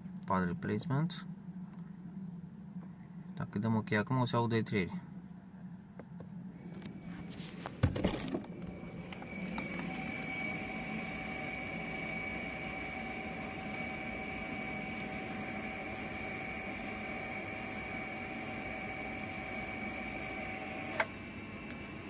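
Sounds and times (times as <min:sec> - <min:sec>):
brake caliper motors whining: 0:06.6 - 0:22.0.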